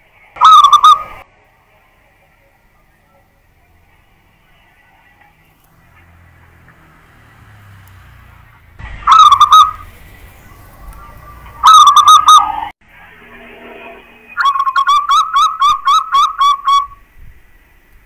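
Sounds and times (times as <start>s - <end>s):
dove cooing: 0.4s - 1.2s, 9.1s - 12.5s.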